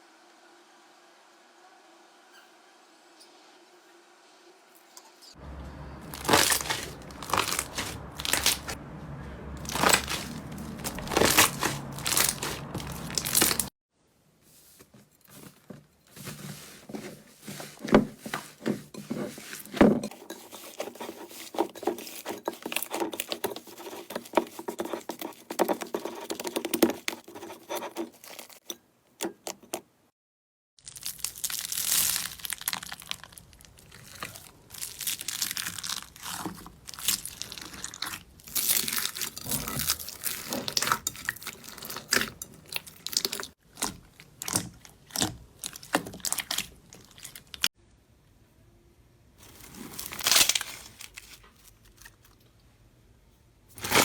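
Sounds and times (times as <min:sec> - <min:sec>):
slime squishing and popping: 0:30.8 - 0:42.2.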